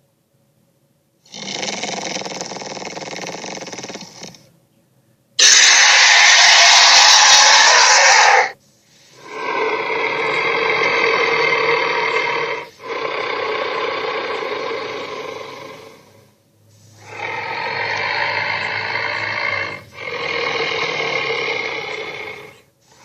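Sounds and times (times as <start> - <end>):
creature roaring: 5.4 - 8.6, 9.2 - 16.2, 17.0 - 22.6.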